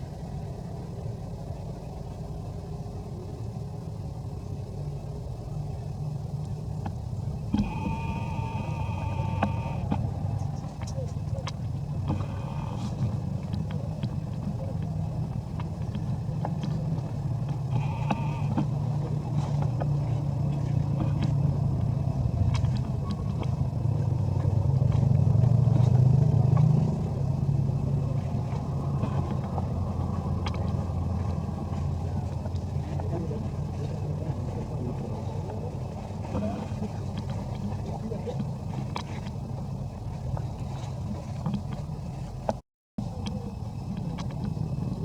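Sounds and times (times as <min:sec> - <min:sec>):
motor rumbling: 0:00.0 - 0:45.0
faint clicks: 0:05.8 - 0:34.8.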